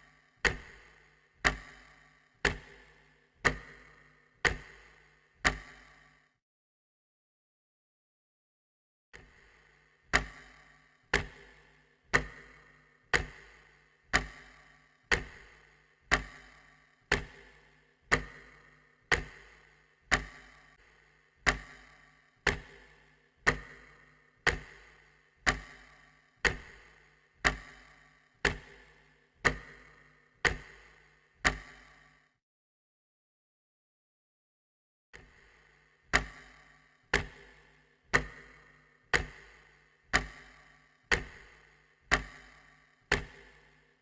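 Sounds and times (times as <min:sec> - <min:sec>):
clock ticking: 0:00.0 - 0:06.2, 0:09.2 - 0:32.2, 0:35.2 - 0:44.0.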